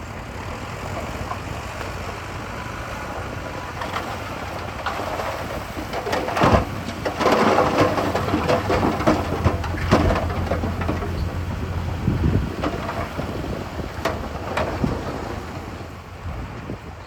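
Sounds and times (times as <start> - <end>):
diesel engine running: 0.0 - 17.0
rumbling clatter of impacts: 3.7 - 16.8.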